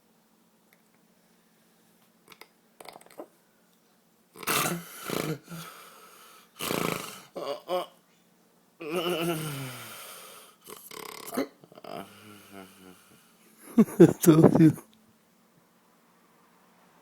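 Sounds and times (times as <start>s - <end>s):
man snoring loudly: 4.4s - 5.9s, 6.6s - 7.8s, 8.8s - 13.2s.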